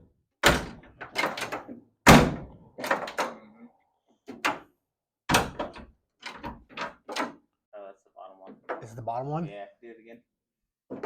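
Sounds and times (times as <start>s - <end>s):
car door thunks and knocks: 2.1s - 2.5s.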